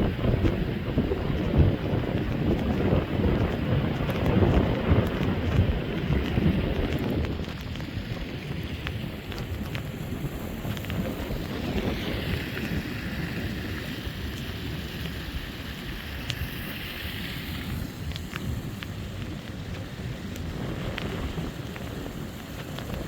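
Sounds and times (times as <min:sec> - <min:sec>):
storm surf: 0:00.0 - 0:23.0
wind buffeting microphone: 0:00.0 - 0:23.0.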